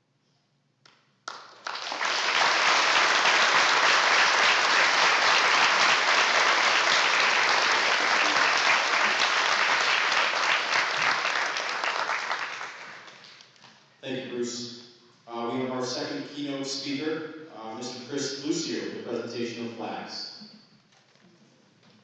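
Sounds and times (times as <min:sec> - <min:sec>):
audience applauding: 0:01.2 - 0:13.4.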